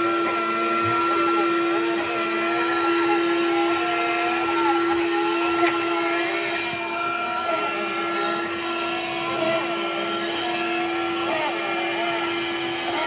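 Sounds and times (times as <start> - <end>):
suction fan whining: 0.0 - 13.0.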